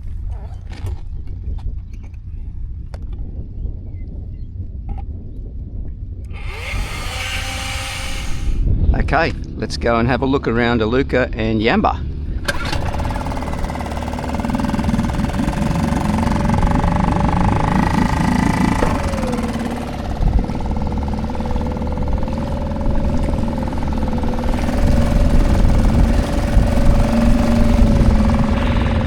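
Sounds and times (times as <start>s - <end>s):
small outboard motor running: 6.3s - 8.7s, 12.2s - 29.0s.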